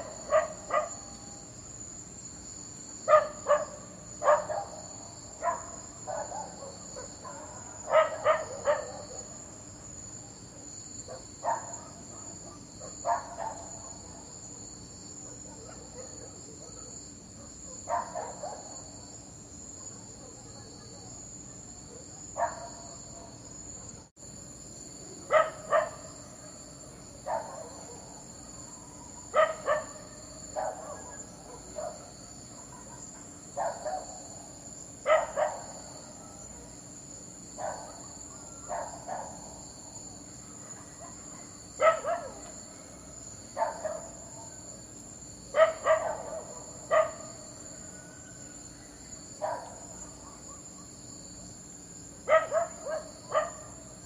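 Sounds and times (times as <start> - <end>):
dog barking: 0.0 - 1.2, 3.0 - 9.4, 11.1 - 18.9, 19.8 - 24.1, 25.2 - 26.2, 27.2 - 34.2, 35.0 - 36.8, 37.6 - 39.6, 40.6 - 42.6, 43.6 - 44.6, 45.5 - 47.4, 49.4 - 51.0, 52.2 - 53.8
insects chirring: 0.0 - 54.0.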